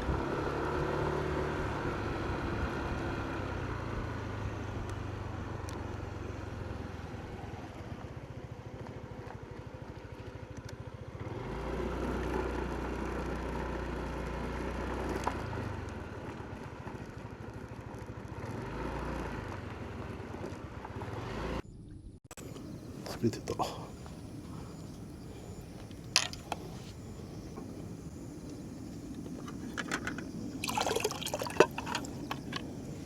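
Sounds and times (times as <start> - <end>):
scooter engine running: 0.0 - 21.6
road and wind noise: 0.0 - 33.0.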